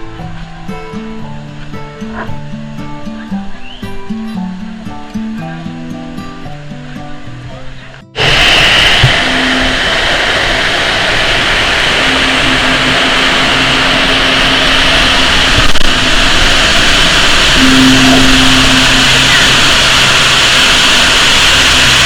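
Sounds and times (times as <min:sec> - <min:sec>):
music: 0:00.0 - 0:10.0, 0:11.8 - 0:22.0
loud steady rushing noise: 0:08.1 - 0:22.0.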